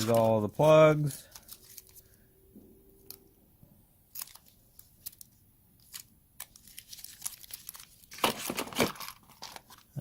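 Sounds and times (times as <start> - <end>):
packaging crinkling: 0.0 - 2.2, 4.1 - 10.0
plastic parts rattling: 4.1 - 9.9.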